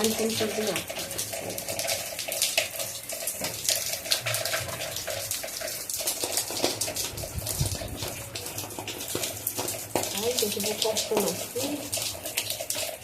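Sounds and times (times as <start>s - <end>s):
water running from a tap: 0.0s - 13.0s
water splashing: 0.0s - 13.0s.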